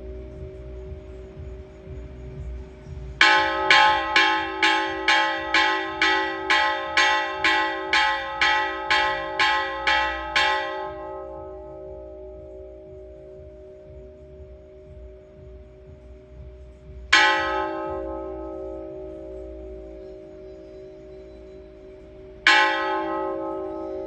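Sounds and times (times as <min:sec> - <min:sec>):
church bell ringing: 0:03.2 - 0:14.1, 0:17.1 - 0:24.0.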